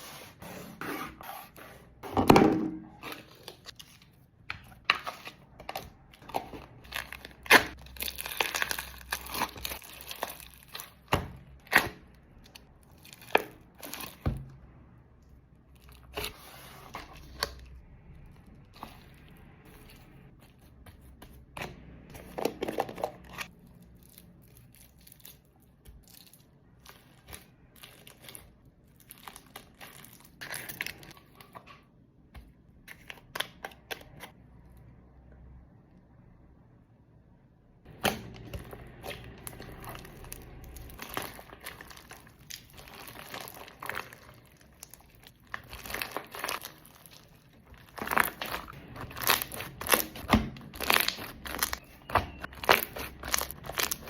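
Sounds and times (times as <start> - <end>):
slime squishing and popping: 37.9 - 54.0.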